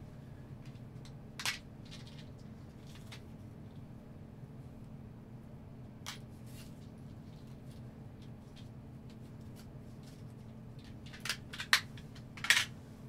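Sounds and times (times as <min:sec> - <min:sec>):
faint steady hum: 0:00.0 - 0:13.0
tool parts clicking and rustling: 0:10.8 - 0:12.7.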